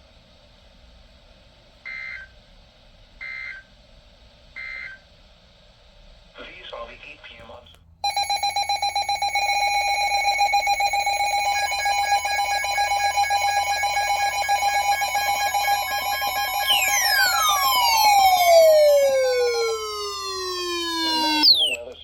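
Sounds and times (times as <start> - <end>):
pulsed high beeps: 8.0 - 22.0
warbling alarm tone: 8.0 - 22.0
downward sweeping tone: 9.4 - 21.8.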